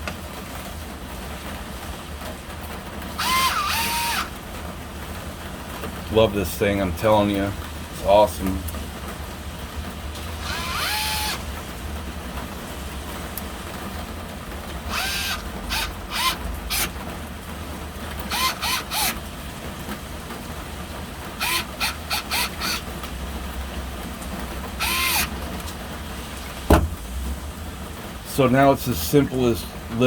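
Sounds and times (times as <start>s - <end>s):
cordless drill whirring: 3.2s - 4.4s, 10.4s - 11.5s, 14.8s - 17.0s, 18.2s - 19.2s, 21.3s - 23.2s, 24.6s - 25.8s.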